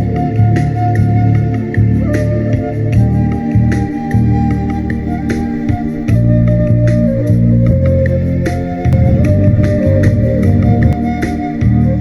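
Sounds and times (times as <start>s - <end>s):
held melody line: 0.8s - 12.0s
pulsing bass beat: 4.1s - 11.2s.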